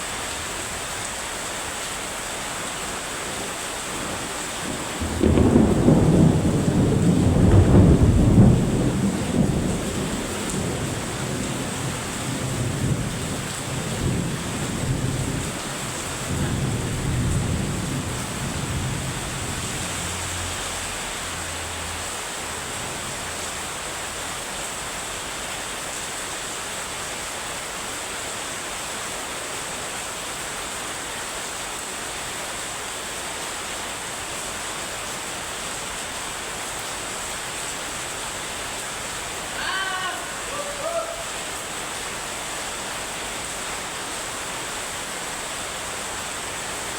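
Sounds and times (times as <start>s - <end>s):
heavy rain falling: 0.0s - 46.9s
thunder rumbling: 3.0s - 22.0s.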